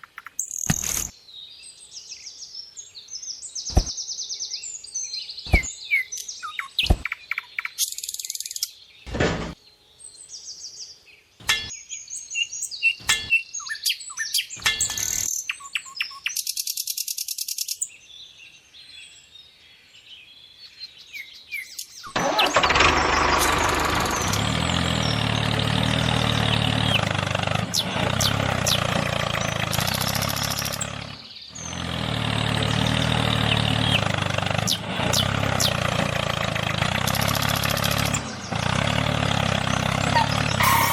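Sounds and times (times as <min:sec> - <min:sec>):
birds chirping: 0:00.0 - 0:40.9
small engine running: 0:22.2 - 0:40.9.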